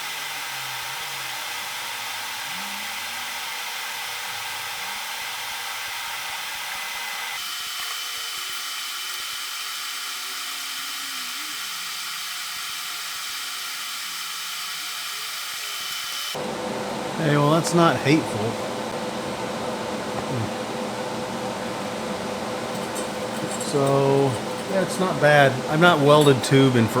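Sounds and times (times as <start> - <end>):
welding arc hissing: 0.0 - 16.4, 21.7 - 27.0.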